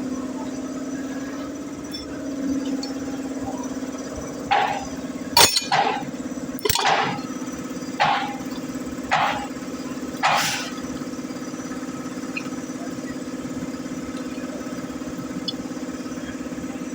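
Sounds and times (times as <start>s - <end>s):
short hisses: 10.3s - 10.8s.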